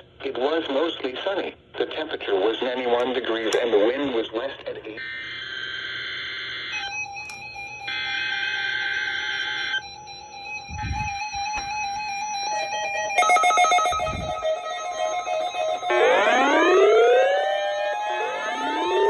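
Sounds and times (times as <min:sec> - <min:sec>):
screechy data tones: 0:04.9 - 0:19.0
steady tones: 0:06.7 - 0:19.0.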